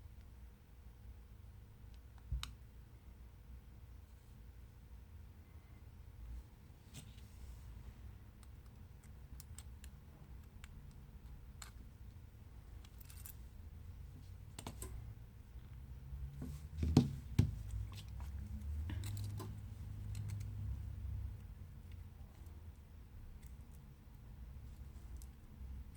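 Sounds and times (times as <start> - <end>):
small tools clicking and tapping: 8.4 - 11.9, 16.8 - 20.6.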